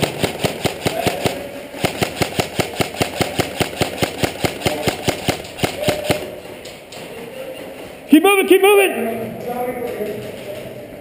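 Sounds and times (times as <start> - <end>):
airsoft gun rapid firing: 0.0 - 6.4.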